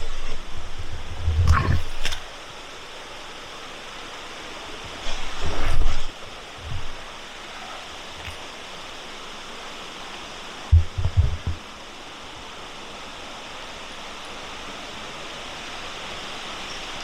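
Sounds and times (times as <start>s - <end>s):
creek water rushing: 0.0s - 17.0s
low dull thumps: 10.7s - 11.7s.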